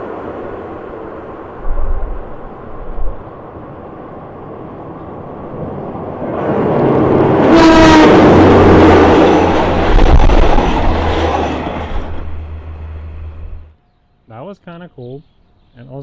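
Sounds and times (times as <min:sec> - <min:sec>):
train rushing past: 0:00.0 - 0:13.7
train horn blast: 0:07.4 - 0:09.2.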